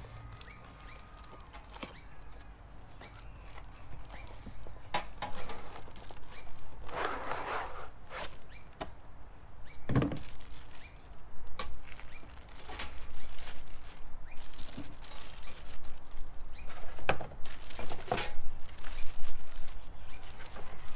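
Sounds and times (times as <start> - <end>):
packaging rustle: 0.0 - 4.7, 5.3 - 7.2, 11.8 - 20.9.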